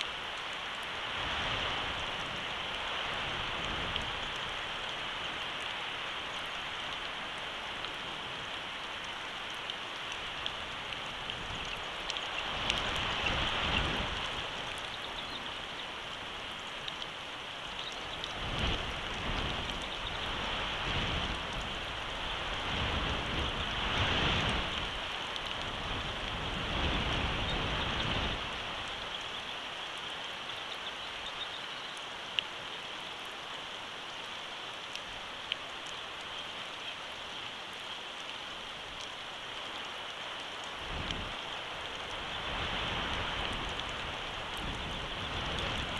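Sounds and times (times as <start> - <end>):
steady rain hiss: 0.0 - 45.9
wind rumbling on microphone: 0.9 - 5.7, 10.2 - 17.1, 17.7 - 29.1, 40.6 - 45.9
sharp drip ticks: 3.6 - 20.4.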